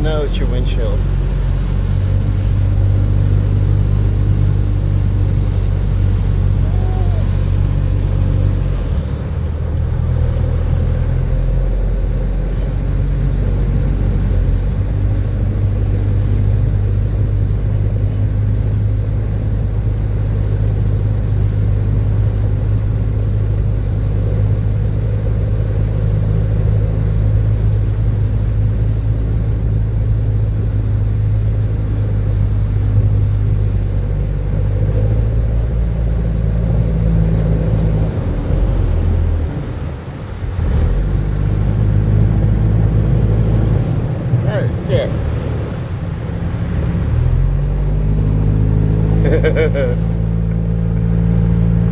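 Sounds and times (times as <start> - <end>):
vehicle engine low drone: 0.0 - 51.9.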